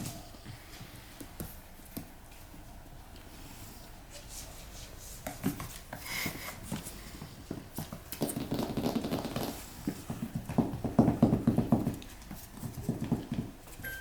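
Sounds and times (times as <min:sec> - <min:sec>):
puppies tapping and scuffling: 0:04.2 - 0:14.0.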